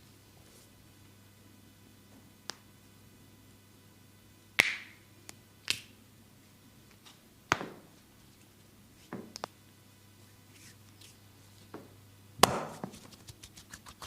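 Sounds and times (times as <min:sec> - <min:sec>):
hand slapping skin: 0:04.6 - 0:05.0, 0:12.4 - 0:14.0.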